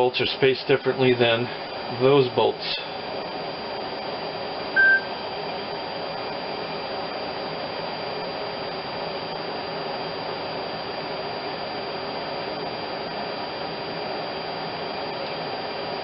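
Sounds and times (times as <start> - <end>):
loud high beep: 4.8 - 5.1.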